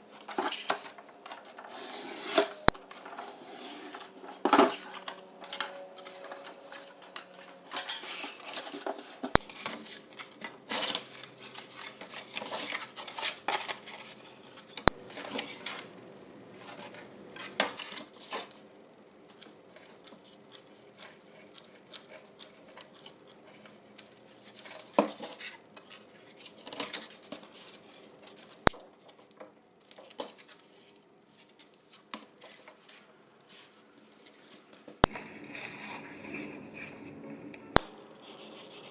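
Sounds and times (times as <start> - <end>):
rustles scrapes and clicks: 0.0 - 15.9, 29.9 - 38.9
scissors cutting foam: 0.2 - 15.5.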